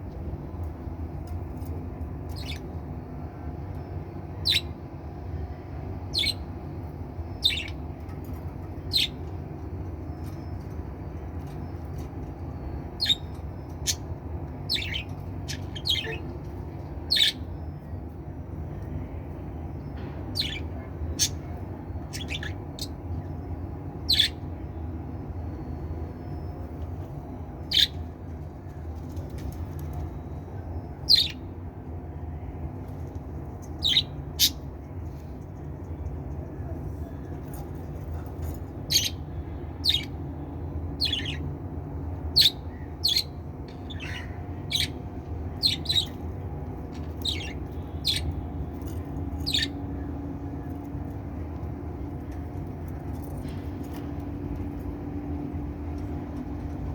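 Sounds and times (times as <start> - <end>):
low background hum: 0.0 - 56.9
budgerigars chirping and squawking: 6.1 - 6.4, 7.4 - 7.8, 14.7 - 16.3, 17.1 - 17.5, 20.4 - 23.0, 24.1 - 24.4, 33.7 - 34.6, 39.8 - 40.2, 41.0 - 41.4, 42.3 - 45.0, 45.6 - 46.2, 47.2 - 48.4, 49.4 - 49.8.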